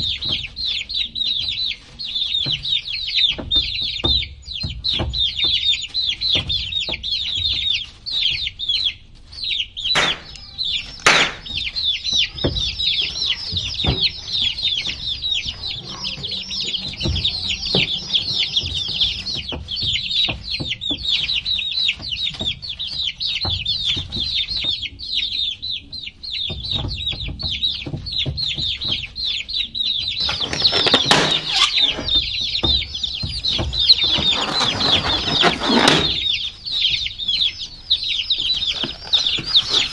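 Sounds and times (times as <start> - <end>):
baby chicks peeping: 0.0 - 39.9
rustling burst: 10.0 - 19.4, 30.2 - 39.9
sharp knocks: 10.0 - 20.0.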